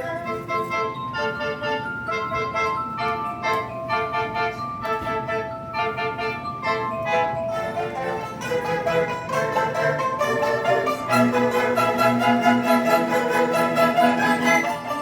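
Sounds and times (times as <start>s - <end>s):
bowed strings: 3.5s - 15.0s.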